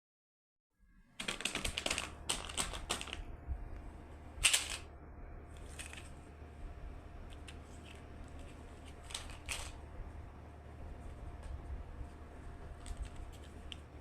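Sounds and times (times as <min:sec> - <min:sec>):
plastic wrapper crinkling: 0:01.2 - 0:03.2, 0:07.7 - 0:09.8.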